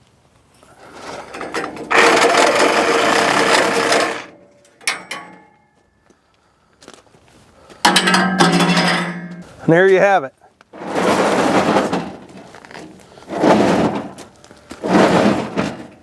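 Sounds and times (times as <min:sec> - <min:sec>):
reciprocating saw cutting metal: 0:00.8 - 0:04.4.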